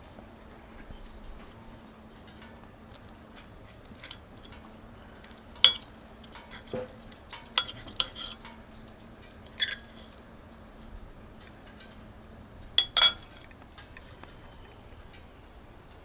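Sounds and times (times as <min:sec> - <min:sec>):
cutlery and dishes clinking: 0:05.6 - 0:10.2, 0:12.8 - 0:13.6.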